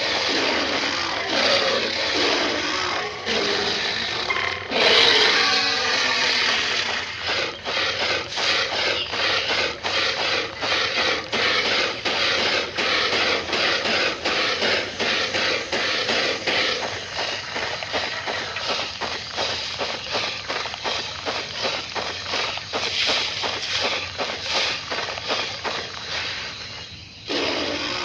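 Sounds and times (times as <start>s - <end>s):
creature rasping: 0.0s - 19.5s.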